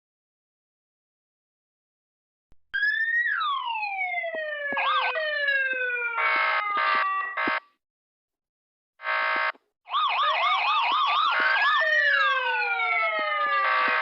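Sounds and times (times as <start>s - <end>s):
siren wailing: 2.8s - 7.7s, 9.0s - 14.0s
siren yelp: 2.8s - 7.8s, 9.0s - 14.0s
buzzing horn blasts: 9.0s - 9.6s.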